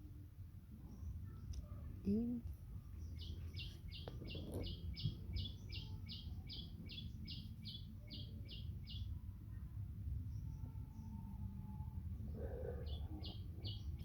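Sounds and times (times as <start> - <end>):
bird chirping: 2.1 - 9.2, 12.4 - 14.0.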